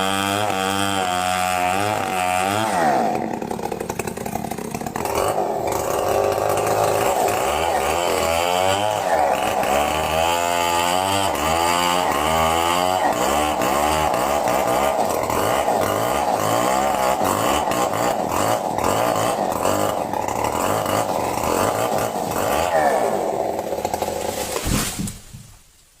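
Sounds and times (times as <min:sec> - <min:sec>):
chainsaw cutting wood: 0:00.0 - 0:25.4.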